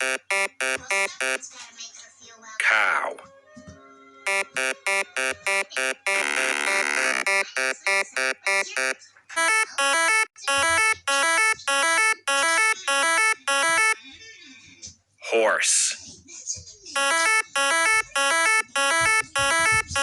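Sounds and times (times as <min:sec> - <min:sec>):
buzzy electronic ringtone tune: 0:00.0 - 0:01.4, 0:04.3 - 0:14.0, 0:17.0 - 0:20.0.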